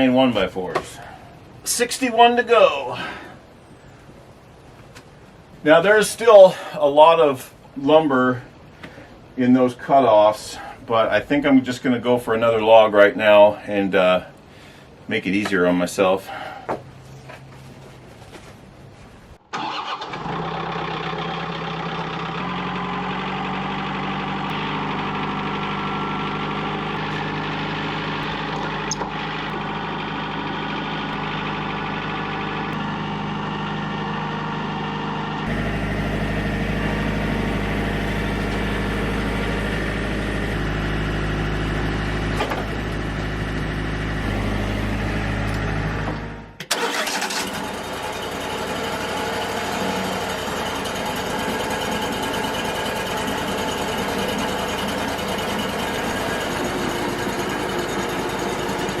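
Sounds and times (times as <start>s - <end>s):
engine running: 19.6s - 59.0s
rough rattling machine: 24.5s - 59.0s.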